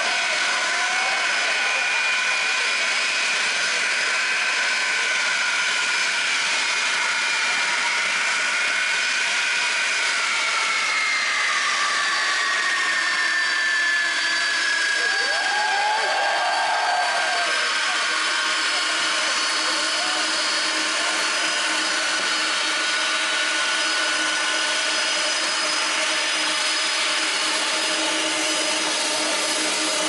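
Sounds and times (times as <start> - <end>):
jet engine high whine: 0.0 - 30.0
jet engines roaring: 0.0 - 30.0.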